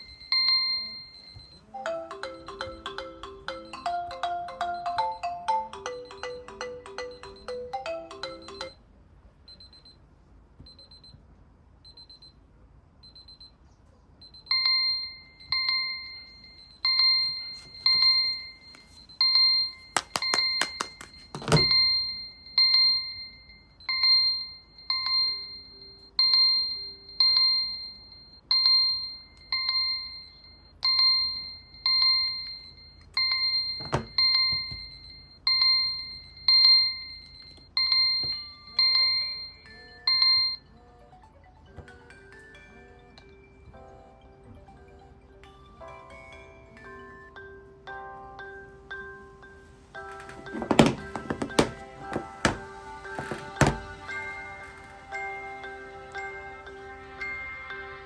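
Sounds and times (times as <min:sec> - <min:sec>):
bell-like alarm beep: 0:00.0 - 0:03.8, 0:14.4 - 0:40.8
melodic ringtone: 0:00.0 - 0:08.8, 0:14.5 - 0:58.0
phone handling clicks: 0:50.5 - 0:53.9.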